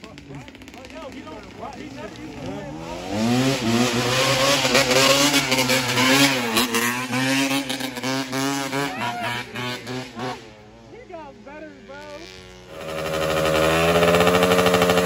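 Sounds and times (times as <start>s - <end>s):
dirt bike engine revving: 0.0s - 10.9s, 11.5s - 15.0s.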